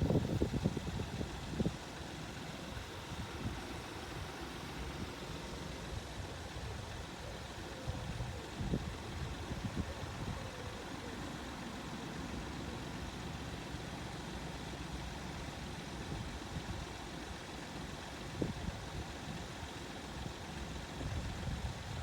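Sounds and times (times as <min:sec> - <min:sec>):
vehicle engine idling: 0:00.0 - 0:22.0.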